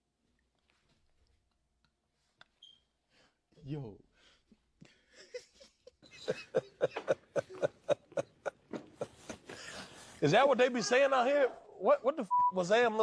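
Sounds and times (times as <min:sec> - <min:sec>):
person laughing hard: 0:04.9 - 0:10.0.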